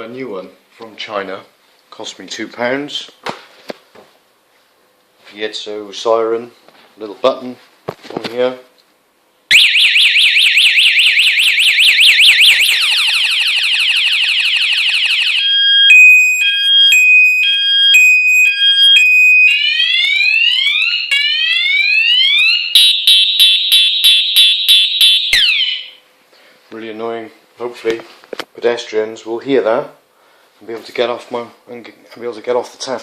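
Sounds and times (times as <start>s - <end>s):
bicycle siren: 9.5s - 26.0s.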